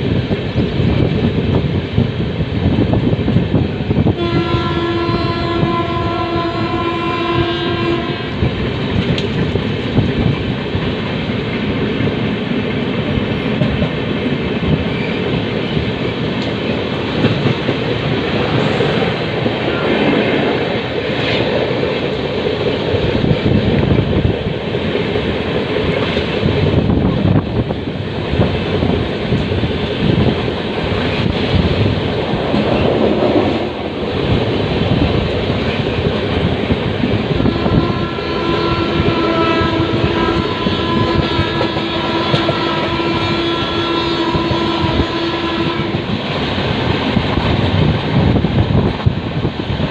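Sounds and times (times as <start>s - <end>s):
train running on rails: 0.0s - 49.9s
train horn: 4.1s - 8.5s, 37.3s - 46.1s.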